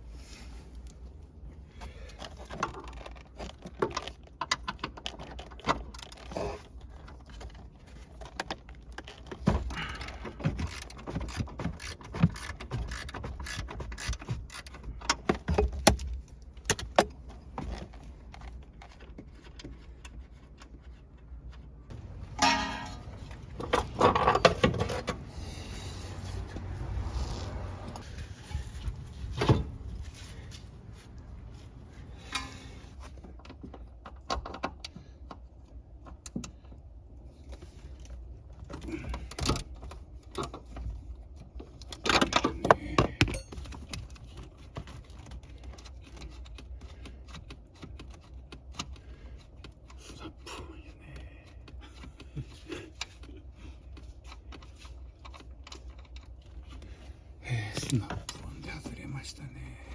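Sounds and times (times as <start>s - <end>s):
metal hand tools clinking: 22.3s - 23.3s.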